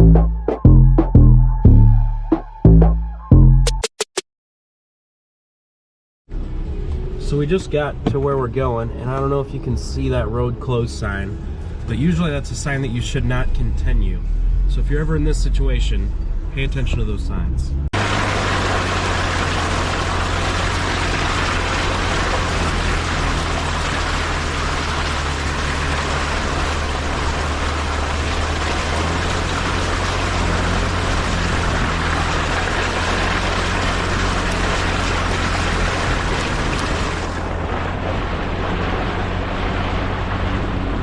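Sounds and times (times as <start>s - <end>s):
rushing driving noise: 6.3s - 41.0s
car engine running: 18.0s - 41.0s.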